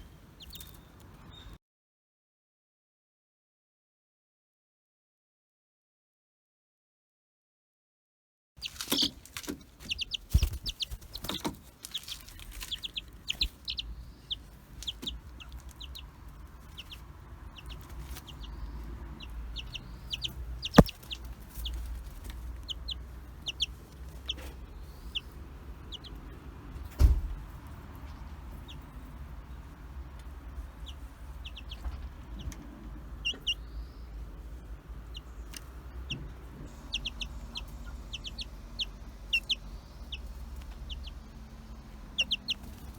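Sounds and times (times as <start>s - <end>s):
baby chicks peeping: 0.0s - 1.6s, 8.6s - 42.9s
sharp knocks: 20.7s - 21.2s.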